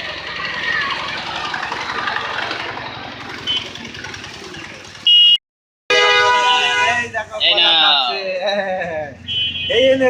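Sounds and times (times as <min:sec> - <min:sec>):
motor engine idling: 0:00.0 - 0:05.3
street noise: 0:00.0 - 0:10.0
loud high-pitched beep: 0:05.1 - 0:05.4.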